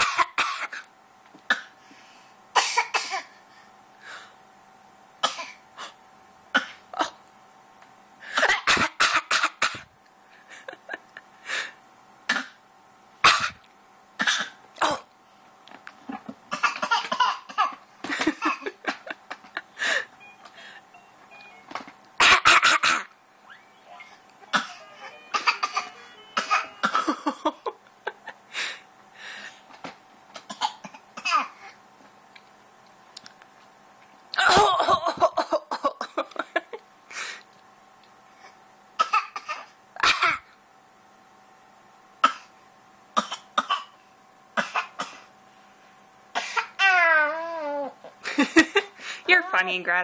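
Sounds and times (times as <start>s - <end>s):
baby fake coughing: 0.0s - 0.8s, 2.6s - 3.3s, 8.4s - 9.9s, 13.2s - 13.6s, 14.2s - 15.1s, 16.5s - 17.8s, 22.2s - 23.1s, 23.9s - 27.6s, 30.5s - 31.6s, 34.4s - 36.2s, 39.0s - 40.5s, 43.2s - 44.0s, 44.6s - 45.3s, 46.4s - 47.0s.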